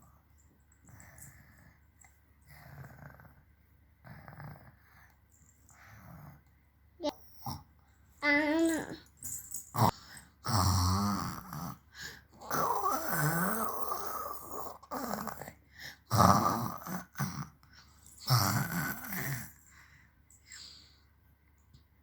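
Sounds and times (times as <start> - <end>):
baby imitating snoring: 9.8 - 11.8, 12.4 - 15.5, 16.1 - 17.5, 18.3 - 19.6.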